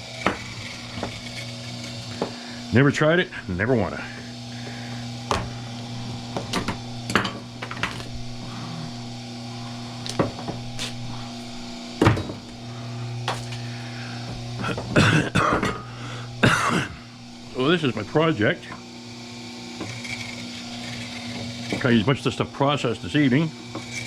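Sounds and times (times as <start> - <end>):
steady hum: 0.0 - 24.0
cable and tools clattering: 5.3 - 9.0, 10.0 - 12.6, 13.2 - 13.7.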